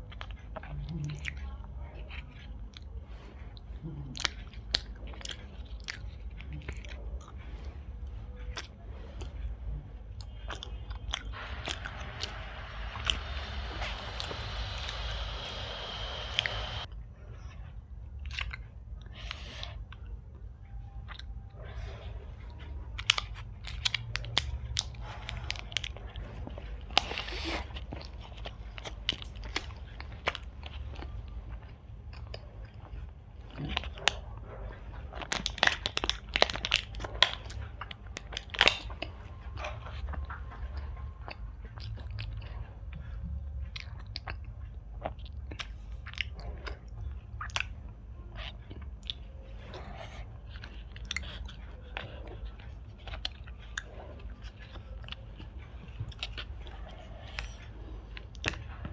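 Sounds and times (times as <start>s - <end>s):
chewing and biting sweets: 0.0s - 58.9s
steady low hum: 0.0s - 58.9s
mouth clicks and smacks: 8.4s - 16.9s, 23.0s - 32.9s, 41.2s - 47.8s.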